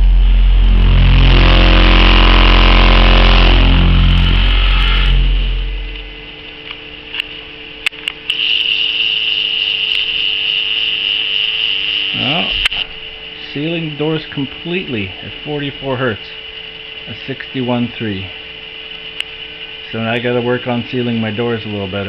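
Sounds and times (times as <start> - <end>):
deep distorted subwoofer tone: 0.0 - 7.9
high whine and hum: 0.0 - 22.0.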